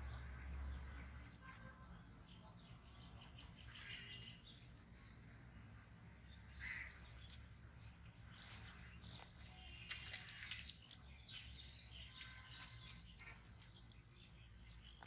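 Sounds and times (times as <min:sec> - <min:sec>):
faint outdoor ambience: 0:00.0 - 0:15.0.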